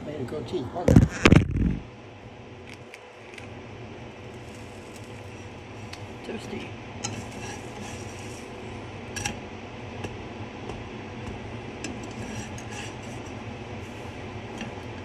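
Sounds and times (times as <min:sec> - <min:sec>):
kitchen fans humming: 0:00.0 - 0:15.0.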